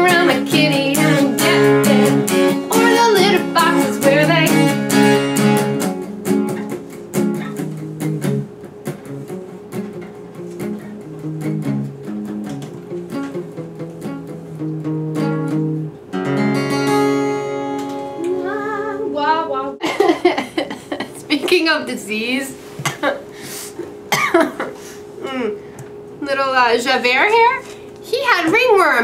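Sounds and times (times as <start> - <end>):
acoustic guitar chords: 0.0 - 20.2.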